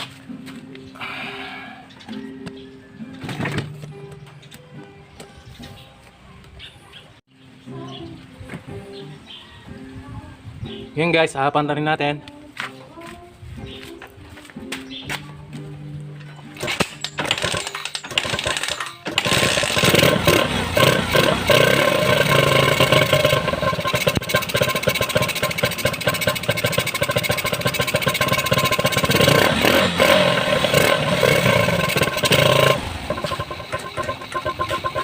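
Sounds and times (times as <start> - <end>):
motorcycle engine starting and running: 3.2 - 4.6, 16.2 - 35.0.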